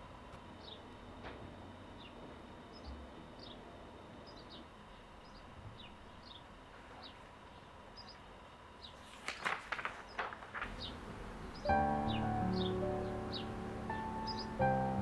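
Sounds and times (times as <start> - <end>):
faint background hiss: 0.0 - 15.0
small bird chirping: 4.2 - 9.0, 10.0 - 15.0.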